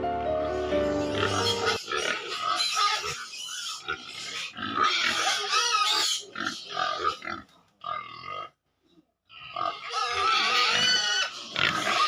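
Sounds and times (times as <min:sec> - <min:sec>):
background music: 0:00.0 - 0:01.9
pigs squealing and grunting: 0:00.4 - 0:08.6, 0:09.3 - 0:12.0.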